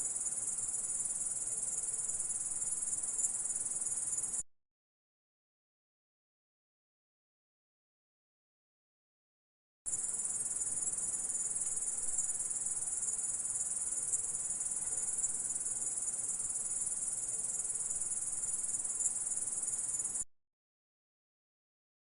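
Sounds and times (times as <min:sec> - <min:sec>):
insect trilling buzz: 0:09.9 - 0:20.2.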